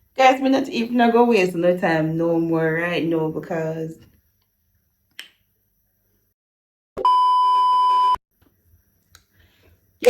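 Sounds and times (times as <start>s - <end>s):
steady electronic beep: 7.0s - 8.2s.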